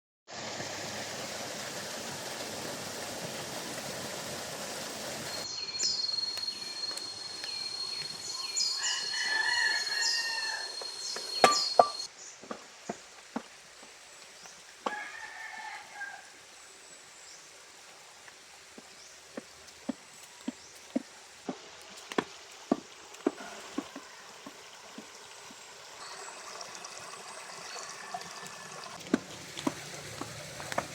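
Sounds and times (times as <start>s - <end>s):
rooster crowing: 8.6s - 11.0s, 14.9s - 16.4s.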